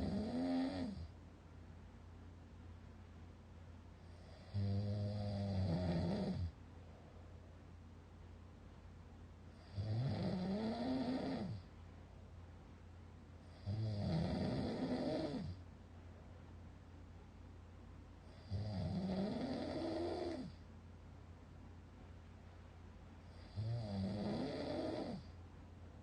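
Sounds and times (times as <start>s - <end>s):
person snoring: 0.0s - 1.1s, 4.1s - 6.5s, 9.6s - 11.6s, 13.5s - 15.6s, 18.3s - 20.6s, 23.3s - 25.3s
low steady hum: 0.0s - 26.0s.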